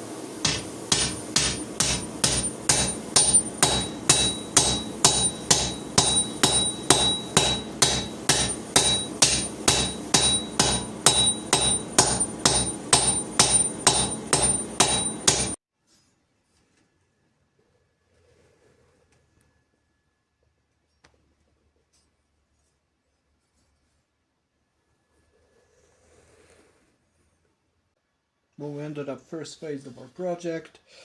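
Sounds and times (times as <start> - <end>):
hammer striking hot steel on anvil: 0.4 - 15.6.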